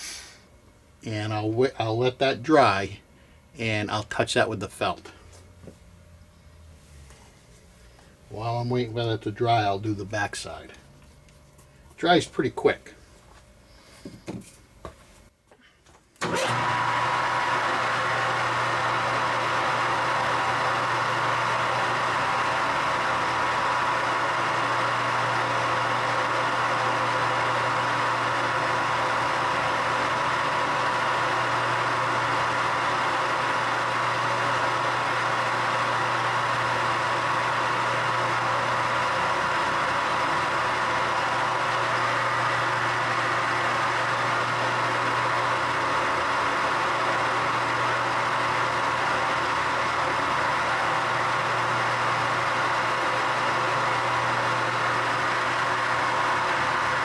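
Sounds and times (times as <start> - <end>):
electric motor humming and whining: 16.2 - 57.0.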